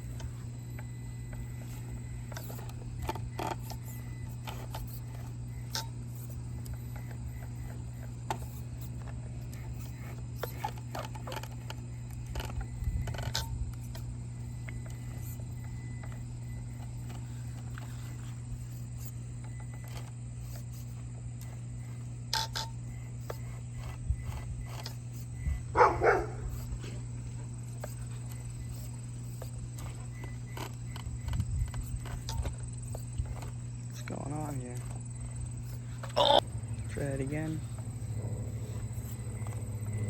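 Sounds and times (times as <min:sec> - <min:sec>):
steady low hum: 0:00.0 - 0:40.0
dog barking: 0:25.8 - 0:26.5.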